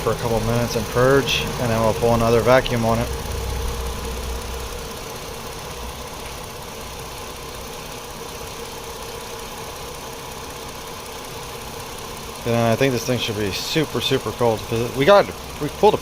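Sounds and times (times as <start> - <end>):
low hum: 0.0 - 13.4
gas hissing: 0.0 - 16.0.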